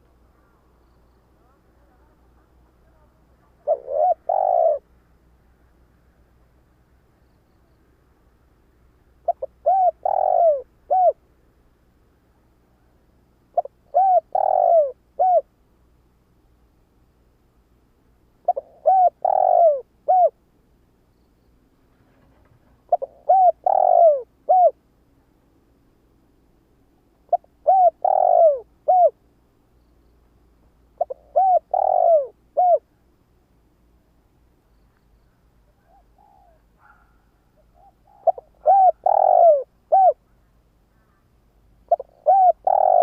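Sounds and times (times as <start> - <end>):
dove cooing: 2.8 - 4.9, 9.2 - 11.2, 13.5 - 15.5, 18.4 - 20.4, 22.1 - 24.8, 27.2 - 29.2, 31.0 - 32.9, 35.7 - 40.4, 41.0 - 43.0.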